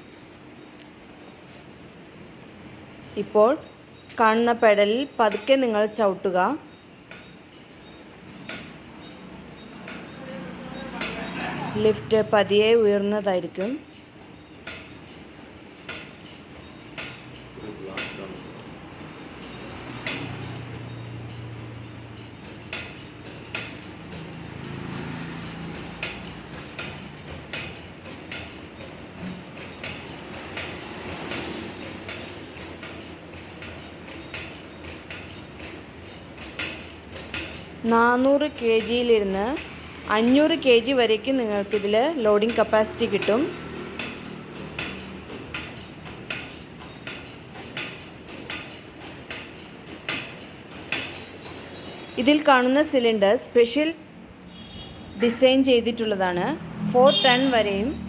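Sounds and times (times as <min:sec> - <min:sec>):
metal clicking: 0:13.6 - 0:53.0.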